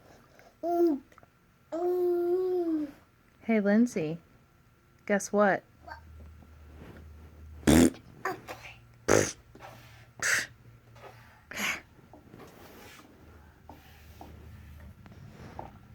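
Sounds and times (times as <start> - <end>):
room hum: 0.0 - 15.9
blown raspberry mouth sounds: 7.6 - 8.0, 9.1 - 9.4, 10.2 - 10.6.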